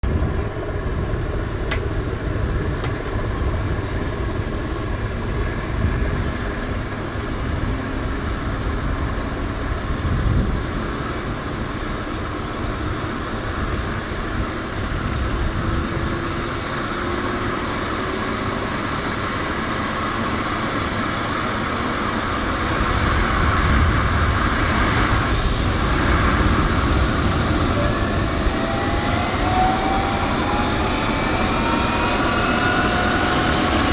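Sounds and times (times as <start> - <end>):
helicopter turbine and rotor: 0.0 - 33.9
thin rising whine: 22.2 - 33.9.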